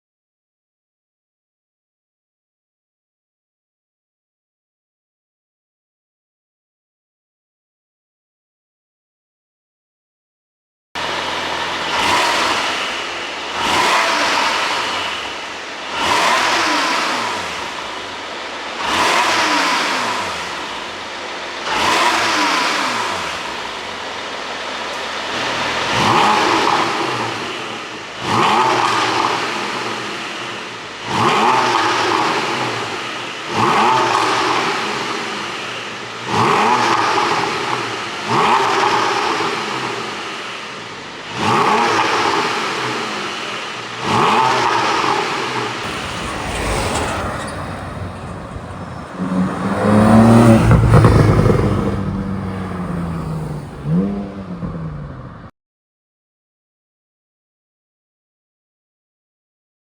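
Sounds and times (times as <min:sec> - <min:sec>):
car engine revving: 0:11.0 - 0:55.4.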